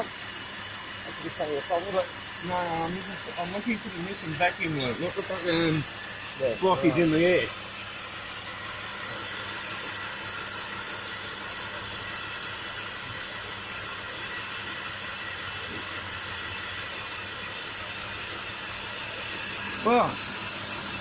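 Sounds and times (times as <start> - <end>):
car engine idling: 0.0 - 21.0
induction air hiss: 0.0 - 21.0.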